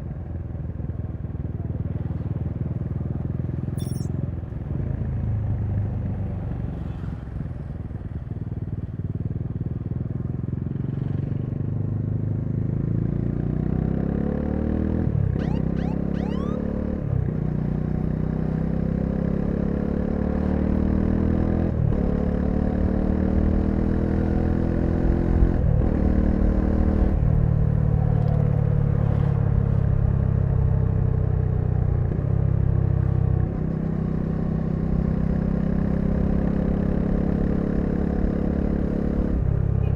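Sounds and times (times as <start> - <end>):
motorcycle engine accelerating through gears: 4.7 - 39.9.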